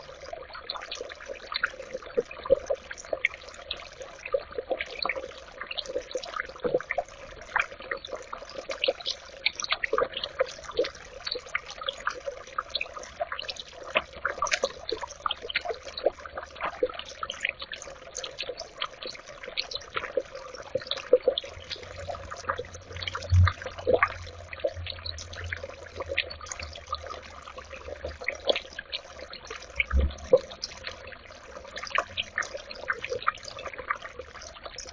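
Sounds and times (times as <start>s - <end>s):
fountain water trickling and dripping: 0.0s - 34.9s
low hum: 21.8s - 27.1s.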